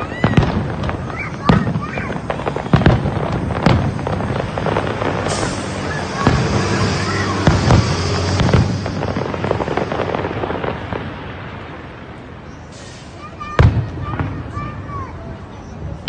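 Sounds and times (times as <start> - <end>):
fireworks bangs: 0.0 - 16.0
fireworks crackling: 0.0 - 16.0
high hiss: 5.2 - 10.5.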